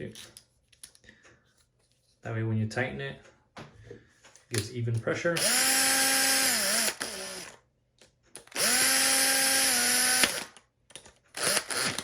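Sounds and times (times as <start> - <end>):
power drill-driver tightening screws: 5.4 - 7.6, 8.4 - 10.6, 11.3 - 12.0.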